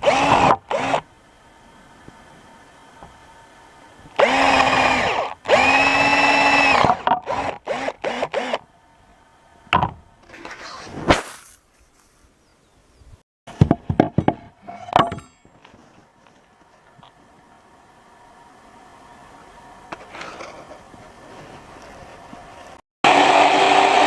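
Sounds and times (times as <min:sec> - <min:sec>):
power drill spinning: 0:00.0 - 0:01.0, 0:04.2 - 0:08.6, 0:23.1 - 0:24.0.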